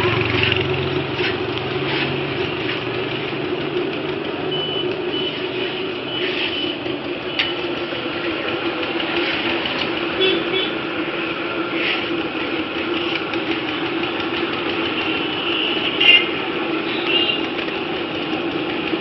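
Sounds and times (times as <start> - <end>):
traffic hum: 0.0 - 19.0
vehicle engine rumbling: 0.0 - 19.0
short high-pitched beeps: 4.5 - 5.4.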